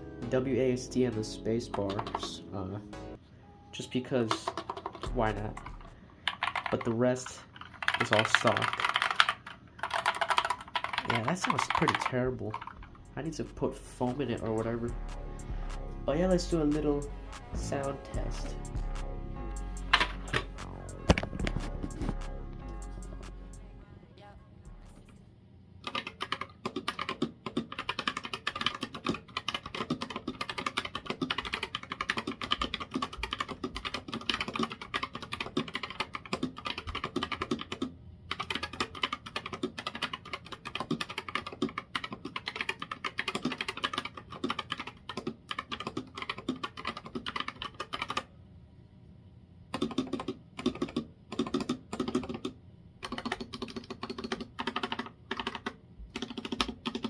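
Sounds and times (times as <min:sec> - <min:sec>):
person talking: 0:00.2 - 0:05.9, 0:06.6 - 0:08.9, 0:10.9 - 0:15.1, 0:16.0 - 0:18.7
mechanical keyboard typing: 0:01.1 - 0:02.6, 0:04.1 - 0:14.9, 0:19.8 - 0:22.2, 0:25.8 - 0:48.3, 0:49.7 - 0:57.0.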